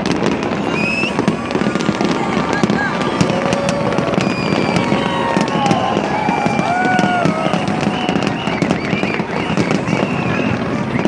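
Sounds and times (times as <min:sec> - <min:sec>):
fireworks bursting and crackling: 0:00.0 - 0:11.0.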